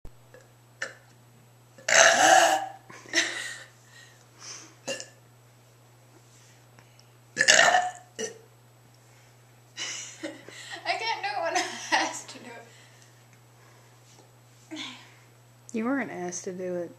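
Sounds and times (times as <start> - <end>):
girl burping: 1.8 - 3.4, 4.9 - 5.2, 7.4 - 8.4.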